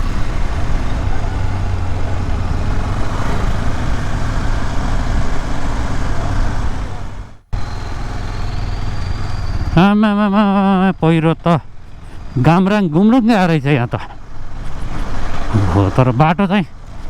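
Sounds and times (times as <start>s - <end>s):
motorcycle engine running: 0.0s - 10.9s
wind and road noise: 0.0s - 17.0s.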